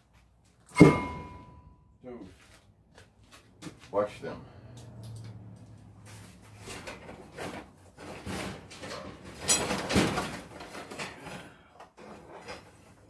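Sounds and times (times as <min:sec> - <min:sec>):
heavy thud: 0:00.7 - 0:01.7.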